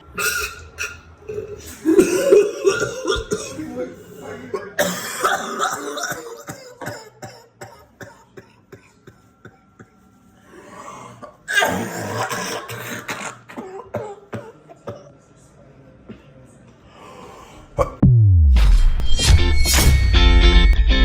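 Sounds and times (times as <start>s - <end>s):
person coughing: 1.6s - 9.9s, 11.1s - 15.1s.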